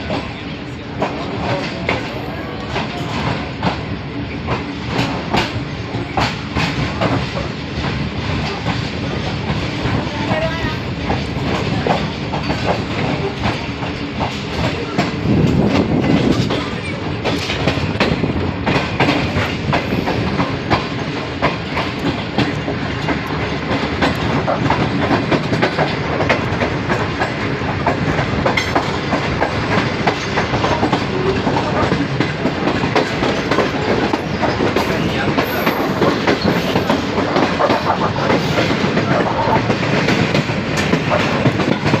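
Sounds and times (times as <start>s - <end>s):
train rumble: 0.0s - 42.0s
train wheels clicking over rail joints: 0.0s - 42.0s.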